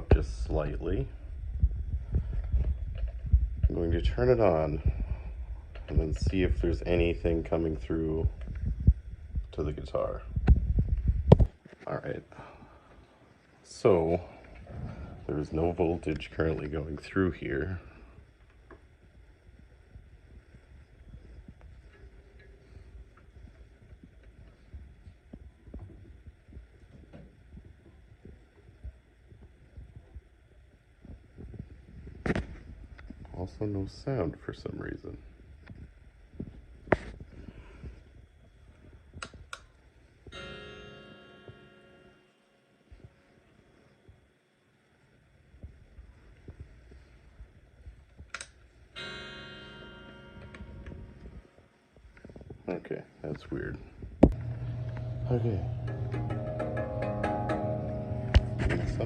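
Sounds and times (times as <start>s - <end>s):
faint low thumps: 0.0s - 11.6s, 53.8s - 59.0s
soft rumble: 0.0s - 40.3s, 50.6s - 56.8s, 57.7s - 59.0s
electric guitar chord ringing: 40.3s - 42.9s, 49.0s - 51.4s, 54.4s - 59.0s
sharp click: 48.3s - 48.6s.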